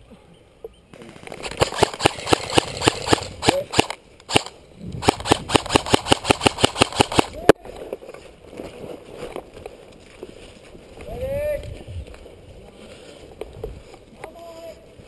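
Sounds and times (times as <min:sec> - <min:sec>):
airsoft guns firing: 0:01.0 - 0:07.5.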